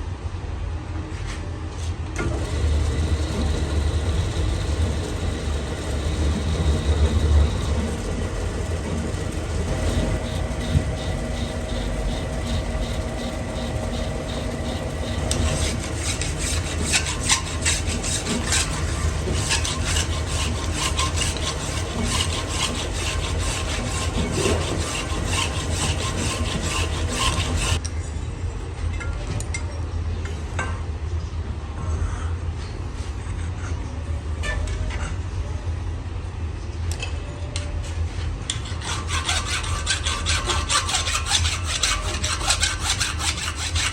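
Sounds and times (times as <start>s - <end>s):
metal lathe humming: 2.2s - 27.8s, 38.8s - 43.9s
tool scraping metal: 2.2s - 27.8s, 38.5s - 43.9s.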